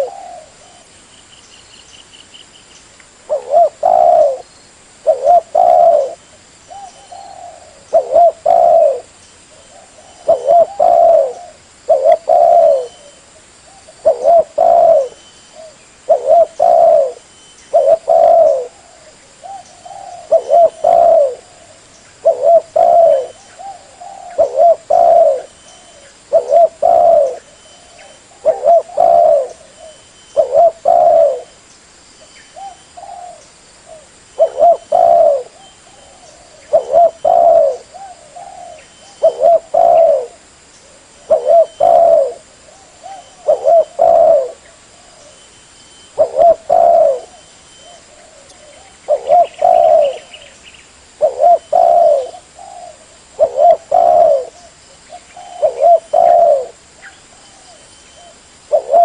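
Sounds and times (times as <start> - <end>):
dove cooing: 0.0 - 0.9, 3.2 - 31.6, 32.5 - 50.6, 51.2 - 59.0.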